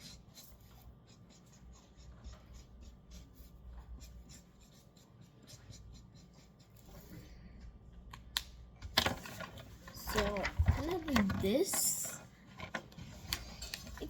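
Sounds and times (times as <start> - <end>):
marker scratching on paper: 0.0 - 7.2.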